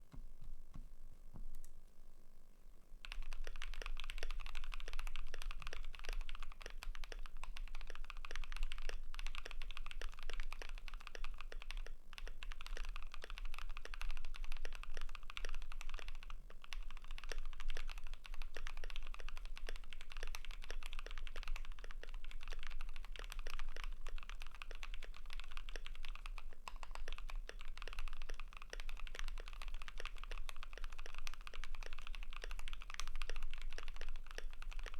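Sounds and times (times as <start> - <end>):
mechanical keyboard typing: 3.0 - 34.9.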